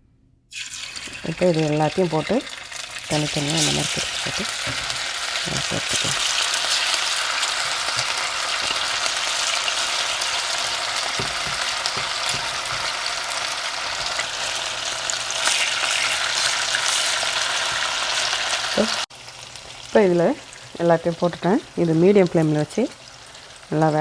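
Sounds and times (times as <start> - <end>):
chicken sizzling in hot oil: 0.5 - 24.0
light knocks: 11.1 - 12.9.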